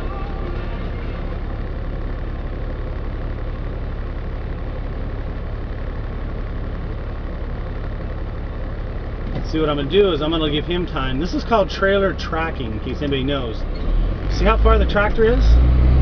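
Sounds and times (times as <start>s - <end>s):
truck engine droning: 0.0s - 16.0s.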